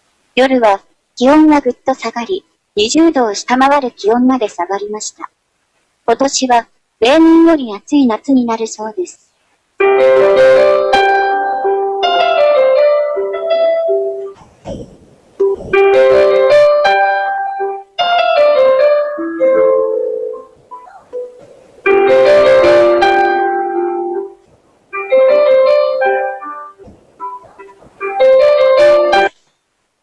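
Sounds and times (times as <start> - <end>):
piano music: 9.8 - 14.4, 15.4 - 29.4.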